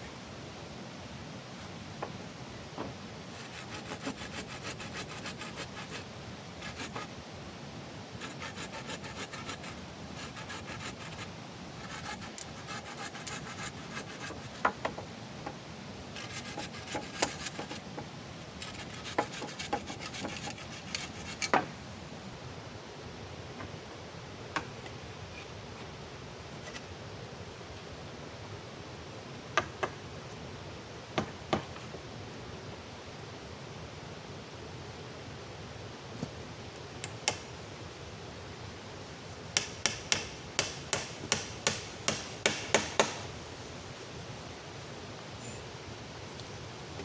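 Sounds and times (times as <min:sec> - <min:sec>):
hand saw cutting wood: 0:03.3 - 0:07.1, 0:08.2 - 0:14.6, 0:16.2 - 0:17.8, 0:18.6 - 0:21.5, 0:37.0 - 0:37.5, 0:39.6 - 0:43.3
sharp knocks: 0:39.6 - 0:43.3.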